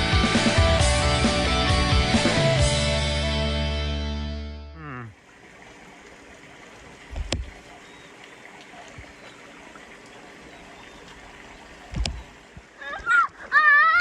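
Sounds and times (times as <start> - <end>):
stream water flowing: 5.0 - 14.0.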